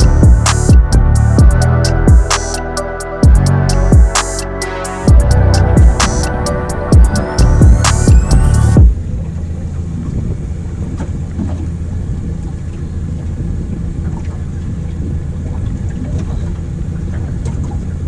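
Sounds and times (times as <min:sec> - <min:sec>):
background music: 0:00.0 - 0:08.9
boat engine idling: 0:00.0 - 0:18.0
water noise: 0:00.0 - 0:18.0.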